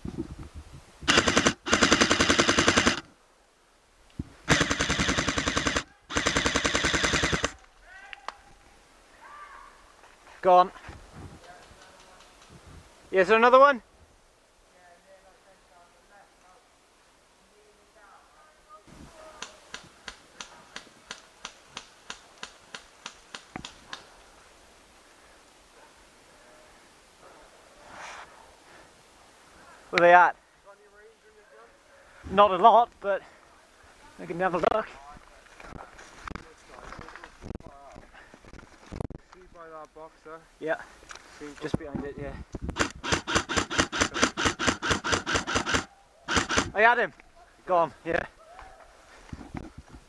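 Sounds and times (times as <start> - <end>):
airsoft rifle automatic fire: 1.1 - 3.0, 4.5 - 7.6, 42.8 - 46.8.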